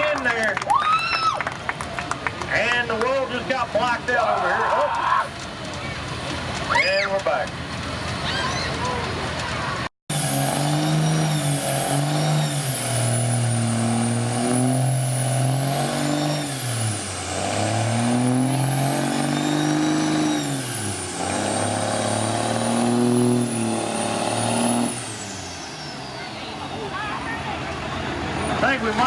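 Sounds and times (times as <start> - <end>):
engine revving: 7.4 - 26.4.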